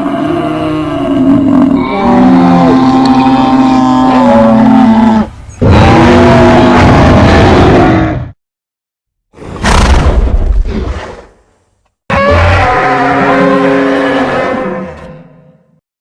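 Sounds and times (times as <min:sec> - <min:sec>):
monster roaring: 0:00.0 - 0:08.4, 0:12.1 - 0:15.1.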